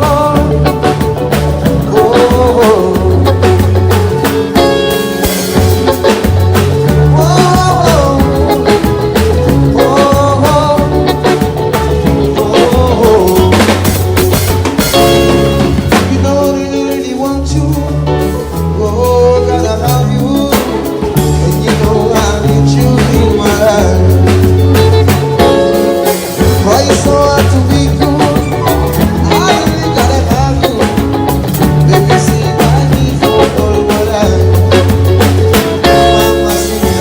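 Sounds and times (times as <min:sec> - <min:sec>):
bass line: 0:00.0 - 0:37.0
drum kit: 0:00.0 - 0:37.0
person singing: 0:00.0 - 0:37.0.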